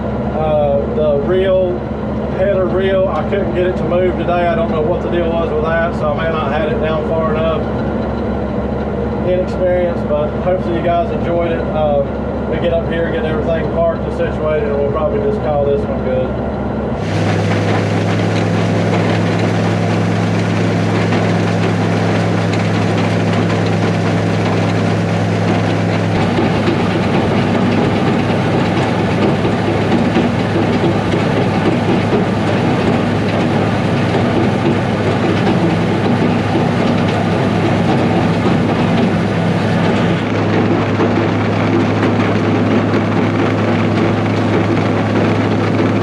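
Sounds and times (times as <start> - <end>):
combine engine hum: 0.0 - 46.0
mechanical rattle: 17.0 - 46.0.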